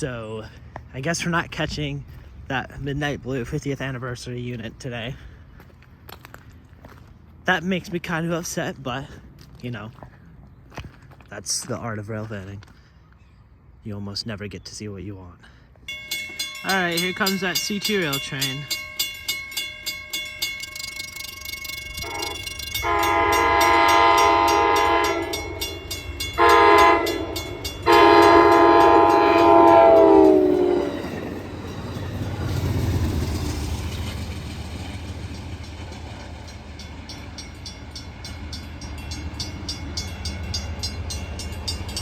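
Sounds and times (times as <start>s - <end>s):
crossing bells dinging: 15.8s - 42.0s
train rumbling past: 15.8s - 42.0s
train horn blasts: 21.8s - 31.4s.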